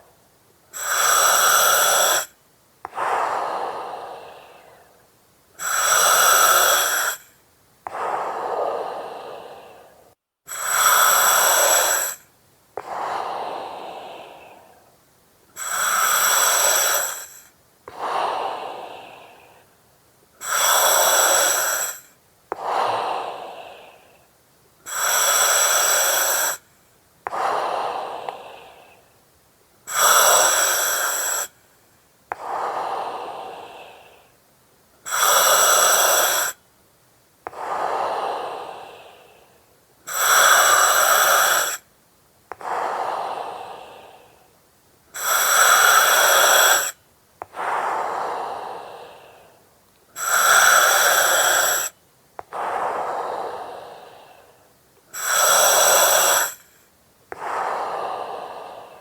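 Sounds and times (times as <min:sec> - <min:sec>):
breathing through oxygen mask: 0:00.7 - 0:02.3, 0:05.6 - 0:07.3, 0:07.9 - 0:14.9, 0:15.6 - 0:19.7, 0:20.4 - 0:24.2, 0:24.9 - 0:26.7, 0:27.3 - 0:29.0, 0:29.9 - 0:31.6, 0:40.1 - 0:41.8, 0:45.2 - 0:49.6, 0:50.2 - 0:59.0
oxygen regulator hiss: 0:00.8 - 0:02.3, 0:15.6 - 0:18.1, 0:20.4 - 0:22.7, 0:40.1 - 0:41.8, 0:50.2 - 0:51.9, 0:55.2 - 0:56.7.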